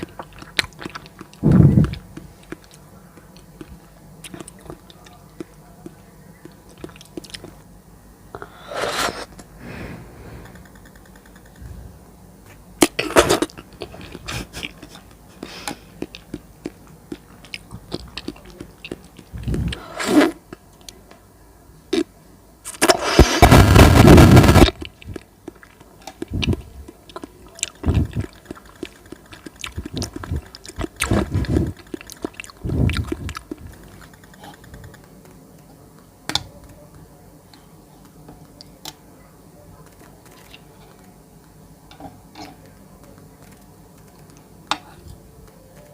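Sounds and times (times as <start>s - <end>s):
wet chewing and slurping: 0.0s - 2.8s, 12.9s - 20.4s, 24.4s - 34.7s
loud noisy burst: 22.8s - 24.8s.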